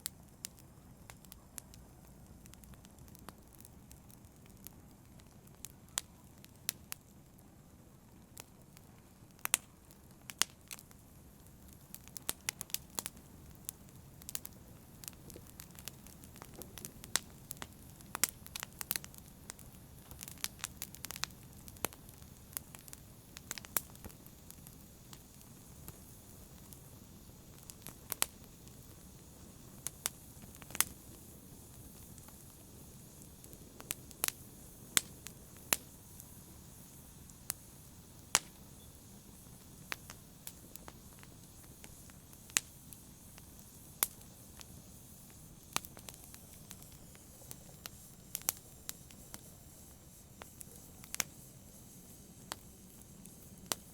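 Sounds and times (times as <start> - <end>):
burning wood crackling and popping: 0.0 - 53.9
wood fire rumbling: 8.3 - 51.3.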